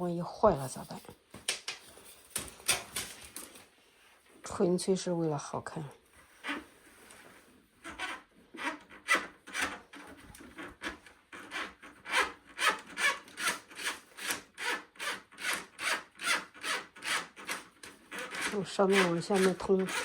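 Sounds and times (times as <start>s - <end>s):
tool scraping inside drain: 6.4s - 20.0s.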